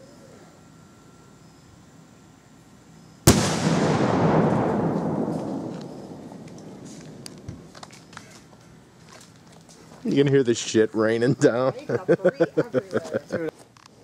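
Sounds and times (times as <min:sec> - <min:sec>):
explosion bang: 0:03.3 - 0:07.8.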